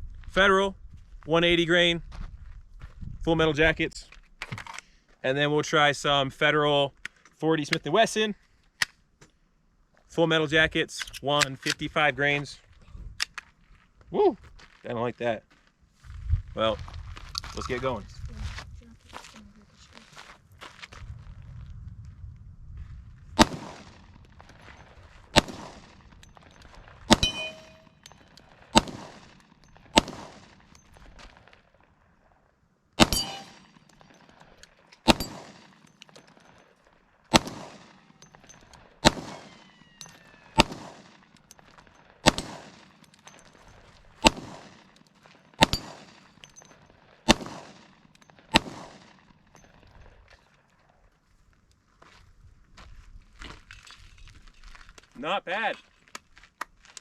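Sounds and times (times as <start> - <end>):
pistol shots: 23.4 - 24.1, 25.3 - 30.8, 33.0 - 34.4, 35.0 - 36.4, 37.3 - 43.6, 44.2 - 49.5.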